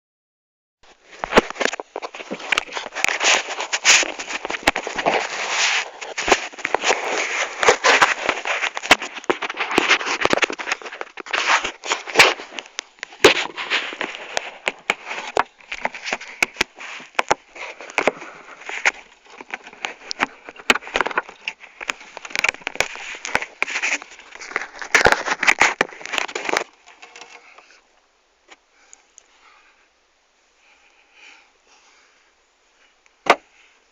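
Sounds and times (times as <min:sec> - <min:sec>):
crackling with sharp clicks: 0:01.2 - 0:27.7.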